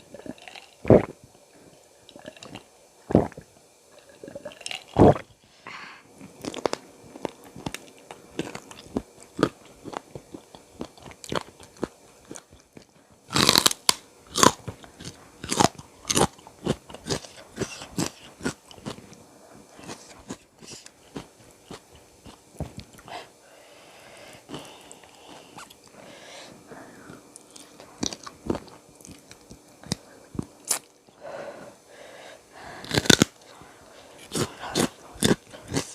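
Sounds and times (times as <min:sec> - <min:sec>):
crunchy bites and chewing: 0:06.2 - 0:23.1, 0:27.4 - 0:30.0, 0:32.8 - 0:33.5, 0:34.1 - 0:35.9.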